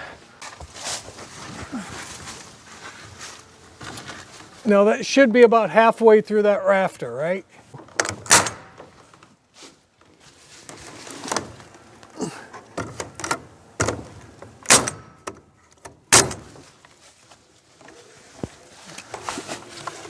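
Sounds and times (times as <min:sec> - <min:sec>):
nail gun firing into wood: 0:08.0 - 0:08.8, 0:14.6 - 0:15.4, 0:16.1 - 0:16.6.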